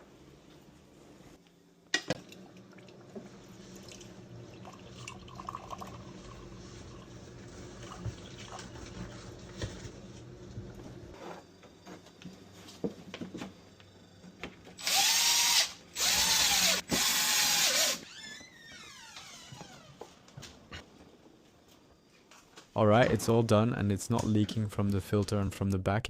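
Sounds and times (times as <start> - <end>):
power drill winding up and down: 14.8 - 20.0.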